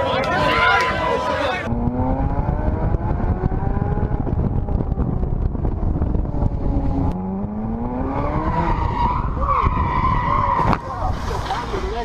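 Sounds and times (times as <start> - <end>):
car engine accelerating: 1.6 - 10.6.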